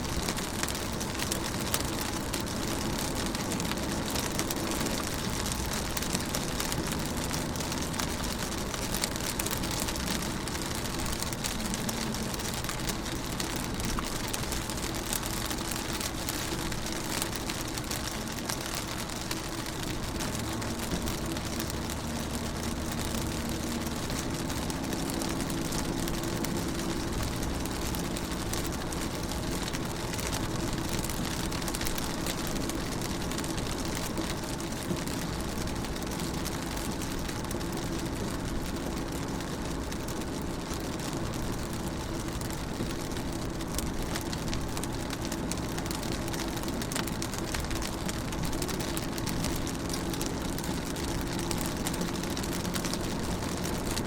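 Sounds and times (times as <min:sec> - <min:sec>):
rain on a window: 0:00.0 - 0:54.0.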